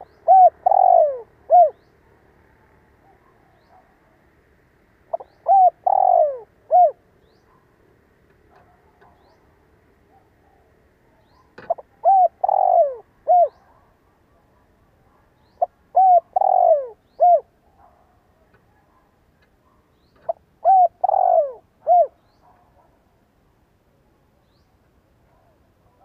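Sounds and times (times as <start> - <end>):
dove cooing: 0.0 - 1.9, 5.1 - 7.1, 11.4 - 14.0, 15.6 - 18.8, 20.2 - 22.9.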